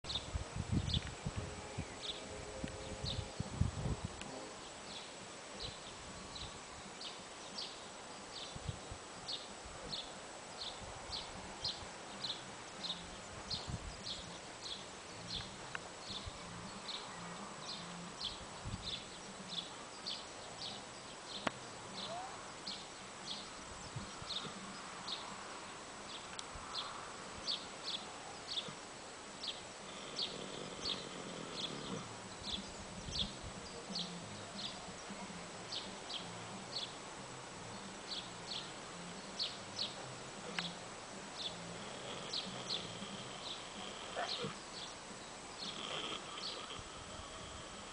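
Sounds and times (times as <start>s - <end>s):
horse snoring softly: 24.0s - 24.8s, 29.8s - 32.6s, 40.4s - 44.9s, 45.6s - 47.9s.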